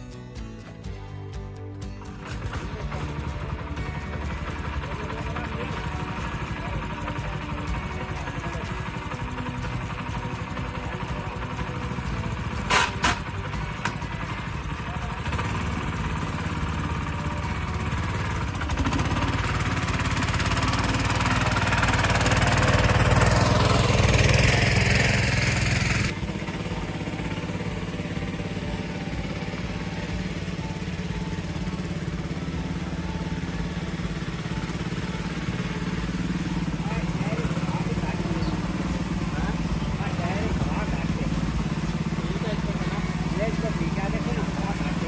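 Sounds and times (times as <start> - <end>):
tractor engine running: 0.0 - 45.0.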